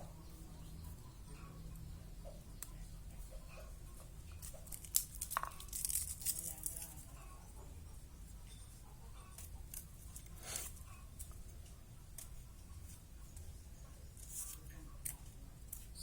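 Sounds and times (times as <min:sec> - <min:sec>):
papery skins crackling and tearing: 0:04.4 - 0:06.9.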